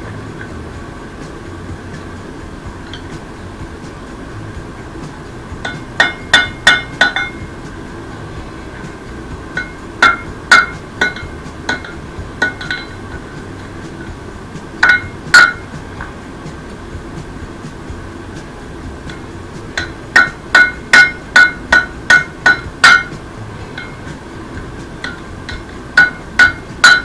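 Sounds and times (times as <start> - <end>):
hammer striking anvil: 5.0 - 14.2, 14.8 - 16.1, 19.1 - 24.3, 24.9 - 27.0.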